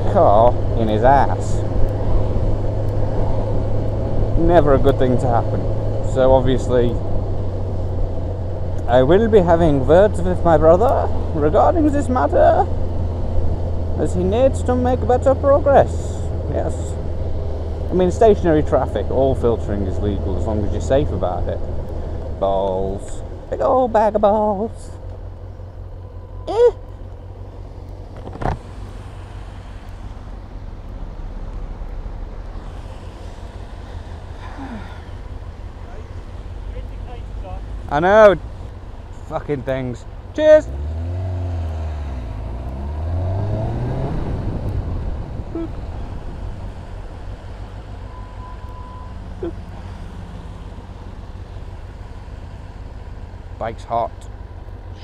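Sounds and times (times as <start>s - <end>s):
motorcycle engine rumbling: 0.0s - 55.0s
wind noise on microphone: 43.6s - 46.8s.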